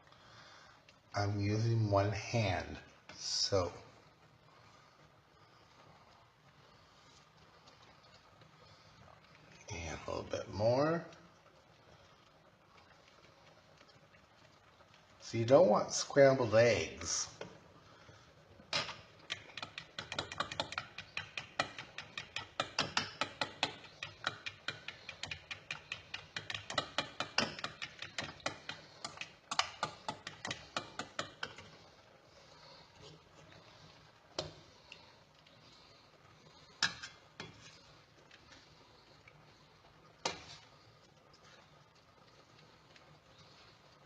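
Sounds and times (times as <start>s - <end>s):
utensil beating in a bowl: 18.8s - 31.8s.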